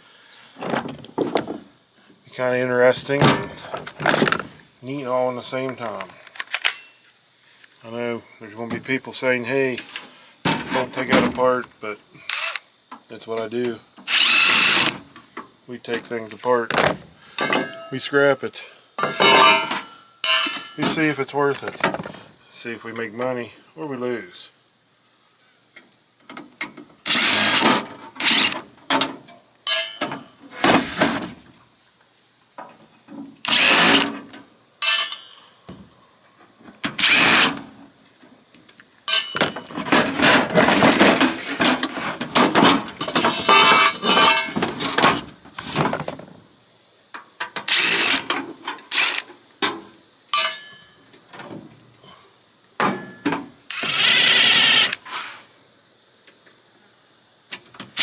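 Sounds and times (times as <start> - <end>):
cordless drill running in bursts: 12.3 - 12.6, 14.1 - 15.0, 27.1 - 28.6, 33.5 - 34.1, 37.0 - 37.5, 47.7 - 48.3, 48.9 - 49.2, 53.7 - 55.0.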